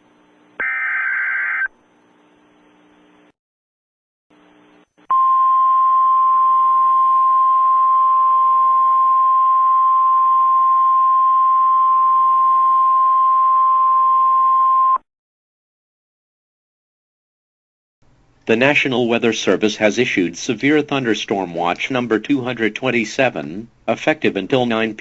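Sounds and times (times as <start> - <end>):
faint radio hiss: 0.0 - 3.3
steady alarm tone: 0.6 - 1.7.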